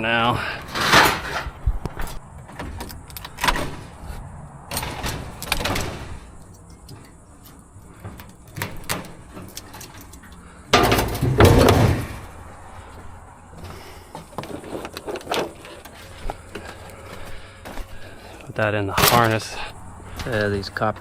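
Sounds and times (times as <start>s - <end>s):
loud scrap clatter: 0.6s - 1.6s, 4.7s - 7.1s, 10.7s - 12.4s.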